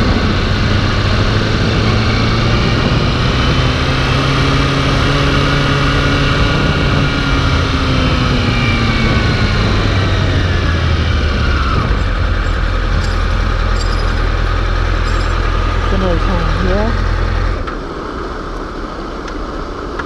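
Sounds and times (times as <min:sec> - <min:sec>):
vehicle engine idling: 0:10.5 - 0:17.6.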